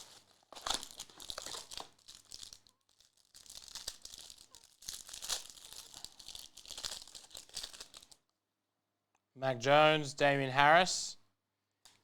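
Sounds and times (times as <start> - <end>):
wrappers crinkling: 0.0 - 8.3.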